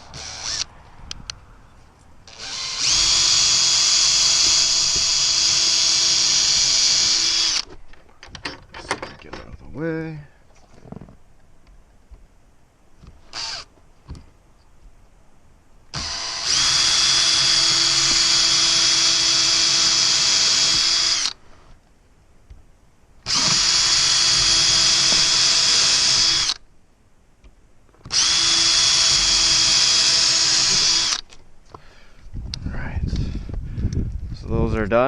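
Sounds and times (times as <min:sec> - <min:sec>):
power drill whining: 0:00.0 - 0:00.7, 0:02.3 - 0:07.7, 0:13.3 - 0:13.7, 0:15.9 - 0:21.4, 0:23.2 - 0:26.6, 0:28.1 - 0:31.4.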